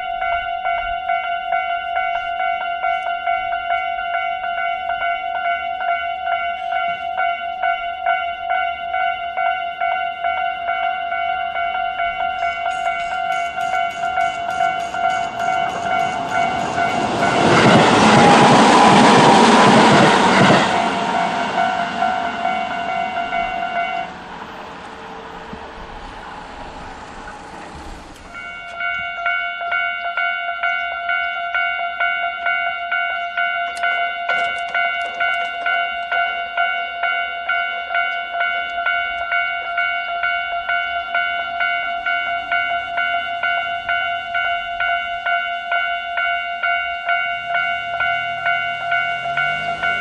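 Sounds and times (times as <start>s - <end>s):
level crossing warning bell: 0.0s - 50.0s
low rushing noise: 12.8s - 28.4s.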